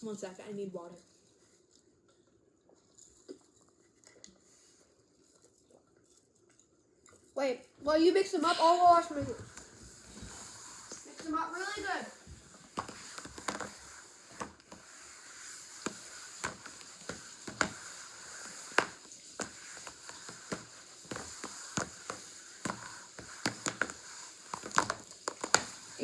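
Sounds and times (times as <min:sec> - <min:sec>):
plastic containers clicking and knocking: 0:18.7 - 0:26.0.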